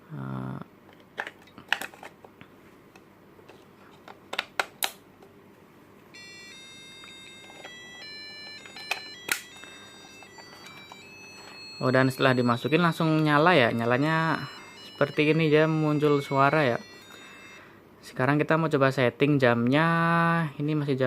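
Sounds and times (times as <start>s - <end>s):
electronic beeping tune: 6.2s - 17.7s.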